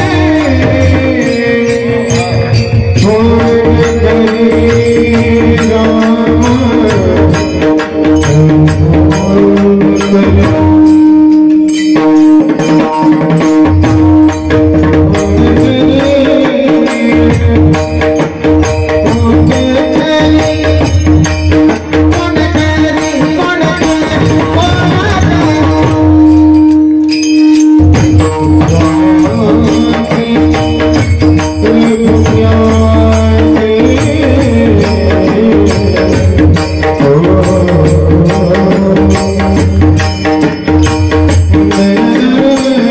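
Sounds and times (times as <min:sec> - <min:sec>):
drum: 0:00.0 - 0:42.9
jingling percussion: 0:00.0 - 0:42.9.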